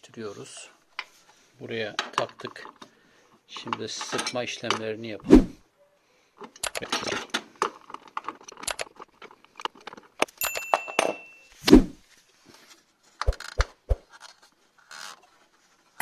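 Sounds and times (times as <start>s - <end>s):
metal tools clicking and clinking: 3.6s - 4.9s, 6.4s - 11.6s
short metallic ring: 10.4s - 11.6s.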